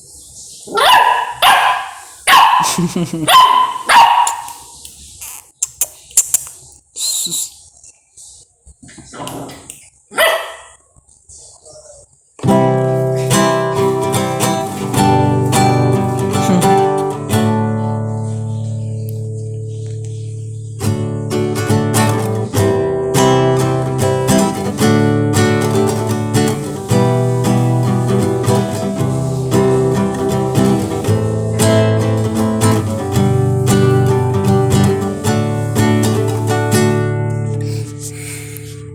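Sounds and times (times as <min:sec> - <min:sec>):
acoustic guitar strumming: 0:12.4 - 0:38.9.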